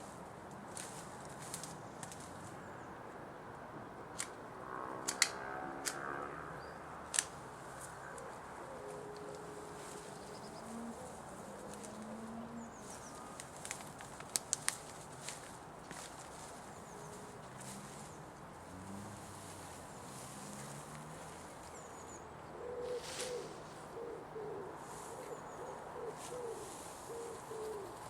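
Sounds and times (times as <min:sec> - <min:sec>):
sharp clicks: 0:04.2 - 0:04.4, 0:05.0 - 0:06.1
bird calls: 0:07.8 - 0:14.3, 0:15.9 - 0:18.2, 0:20.4 - 0:28.0.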